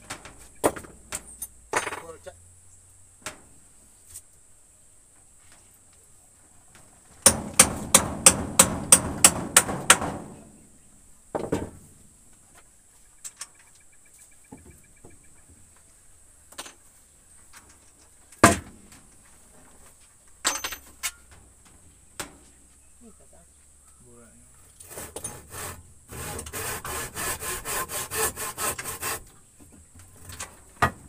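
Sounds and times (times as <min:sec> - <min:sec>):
hammer striking nail into wood: 0:07.2 - 0:10.4.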